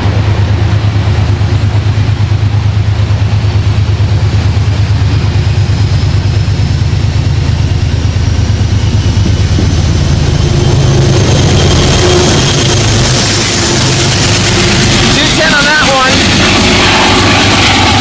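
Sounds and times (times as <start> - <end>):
diesel train engine throbbing: 0.0 - 18.0
high whine rising in pitch: 5.8 - 18.0.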